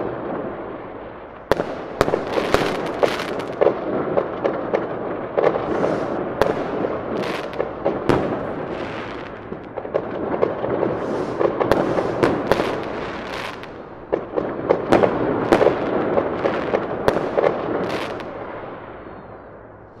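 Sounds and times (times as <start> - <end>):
fireworks hissing and cracking: 1.5 - 4.5, 5.3 - 18.4.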